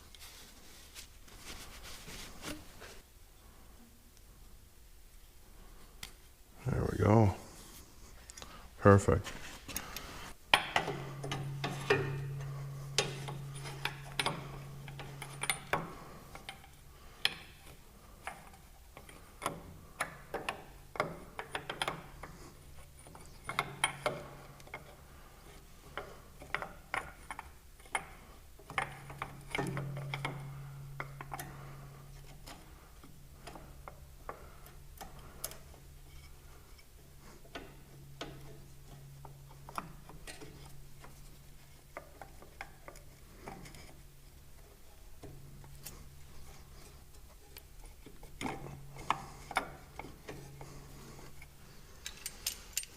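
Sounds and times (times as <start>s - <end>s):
low hum: 10.8s - 17.1s.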